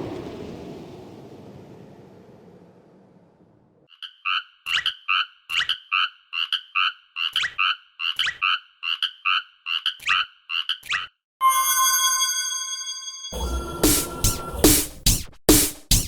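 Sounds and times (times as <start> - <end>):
two-tone crossing alarm ding: 11.4 - 14.6.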